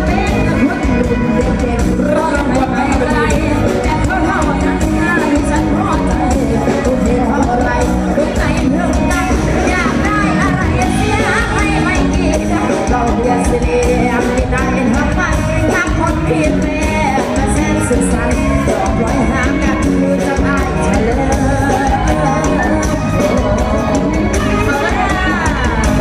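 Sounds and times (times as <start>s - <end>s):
live band music with singer: 0.0s - 26.0s.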